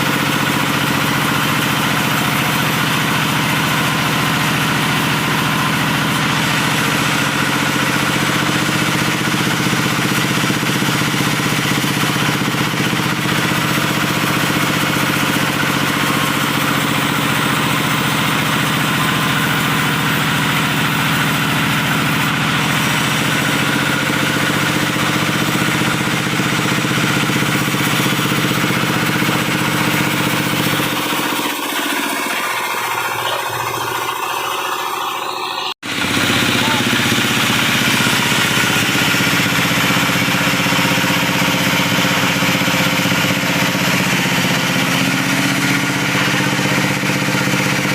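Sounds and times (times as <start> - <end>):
diesel engine humming: 11.4 - 47.9.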